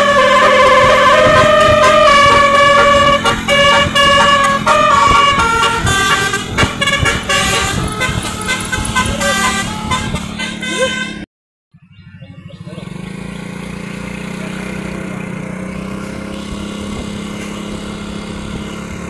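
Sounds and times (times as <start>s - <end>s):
musical bus horn playing tune: 0.0s - 11.3s.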